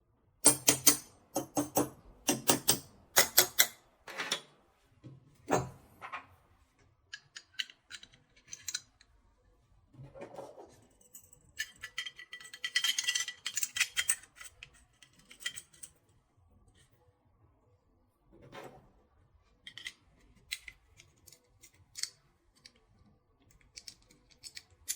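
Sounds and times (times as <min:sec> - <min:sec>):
metal parts clicking and clacking: 0:00.4 - 0:04.5, 0:07.1 - 0:09.2, 0:10.9 - 0:16.0, 0:19.6 - 0:22.8, 0:23.5 - 0:24.9.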